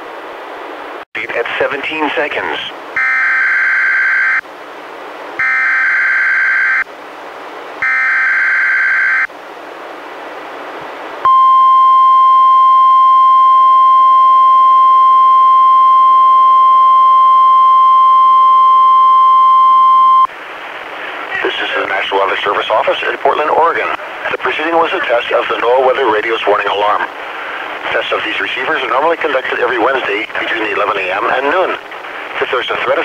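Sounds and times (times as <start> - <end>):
steady warning alarm tone: 3.0 - 4.4, 5.4 - 6.9, 7.8 - 9.3.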